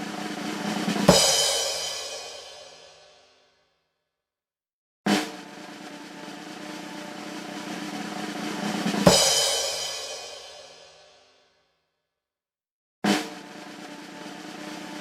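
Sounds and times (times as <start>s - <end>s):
snare drum roll: 0.0s - 3.1s, 5.1s - 11.2s, 13.1s - 15.0s.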